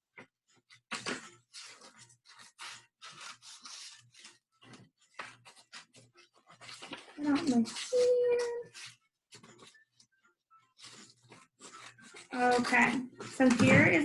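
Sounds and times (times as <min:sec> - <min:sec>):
scissors snipping paper: 0:00.6 - 0:09.9.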